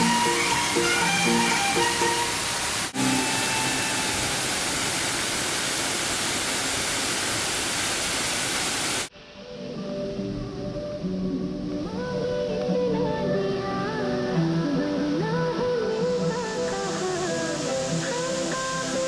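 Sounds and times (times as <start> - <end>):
background music: 0.0 - 4.2, 9.1 - 19.0
waterfall rushing: 0.0 - 9.1, 11.8 - 19.0.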